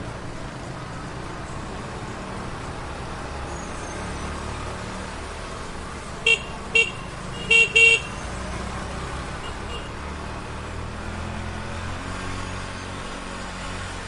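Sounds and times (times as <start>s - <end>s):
street traffic rumble: 0.0s - 14.0s
vehicle horn tooting: 6.2s - 8.2s.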